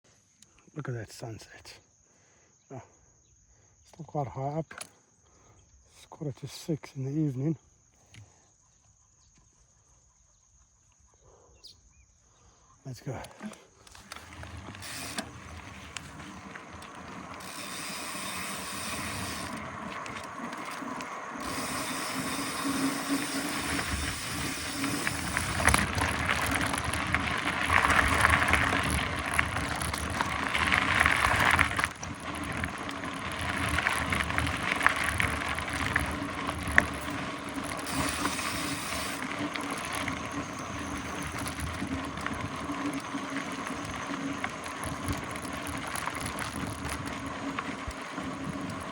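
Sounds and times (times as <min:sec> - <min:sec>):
tyres rolling over trail: 0:12.4 - 0:48.9
freewheel ratchet ticking: 0:17.2 - 0:25.9, 0:37.8 - 0:39.2.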